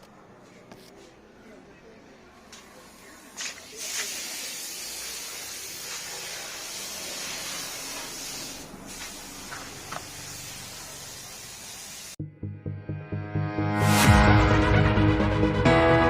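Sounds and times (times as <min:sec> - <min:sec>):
steady hiss: 0:02.8 - 0:12.2.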